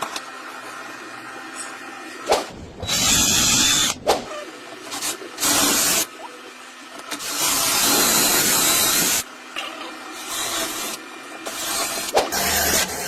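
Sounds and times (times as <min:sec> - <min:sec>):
power drill boring through board: 0:02.8 - 0:04.0, 0:05.4 - 0:06.1, 0:07.2 - 0:09.2, 0:10.2 - 0:13.0.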